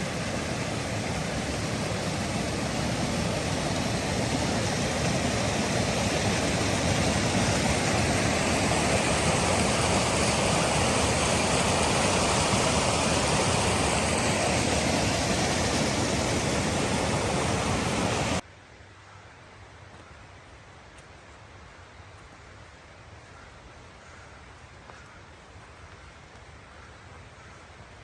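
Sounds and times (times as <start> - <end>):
stream water rushing: 0.0 - 18.4.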